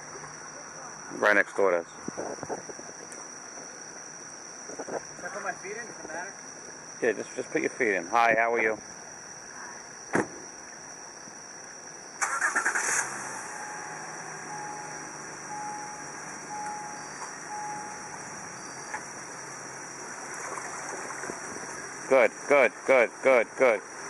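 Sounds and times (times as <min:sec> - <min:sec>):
car engine starting and idling: 0:12.2 - 0:23.1
warning chime beeps: 0:13.5 - 0:19.0.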